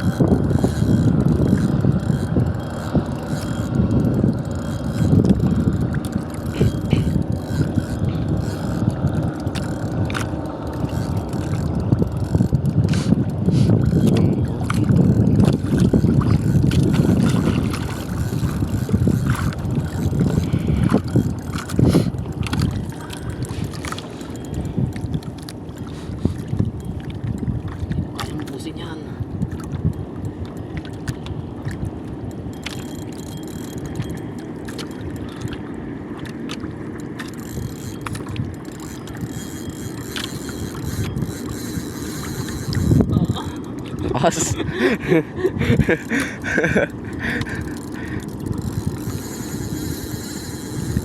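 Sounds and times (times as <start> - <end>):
small clicks: 0.0 - 21.8, 29.6 - 43.8
wind on microphone: 0.0 - 35.6, 37.2 - 51.0
water rumbling: 0.0 - 51.0
small knocks and splashes: 13.9 - 41.6.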